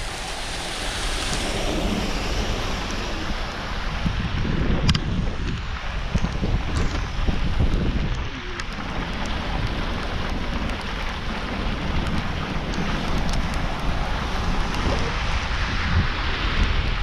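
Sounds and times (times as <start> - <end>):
rain hissing: 0.0 - 17.0
wind buffeting microphone: 0.0 - 17.0
raindrop ticks: 4.8 - 15.5.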